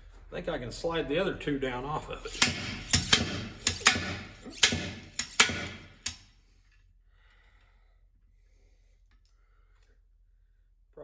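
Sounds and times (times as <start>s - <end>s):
slide hammer metal clanks: 2.3s - 6.3s.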